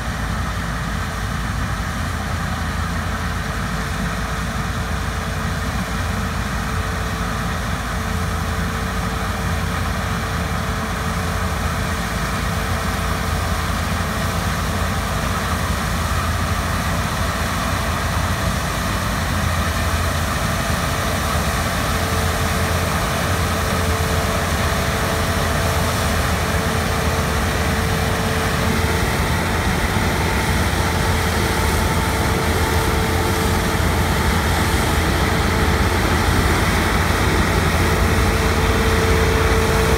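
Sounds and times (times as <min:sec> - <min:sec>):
diesel engine hum and whine: 0:00.0 - 0:39.9.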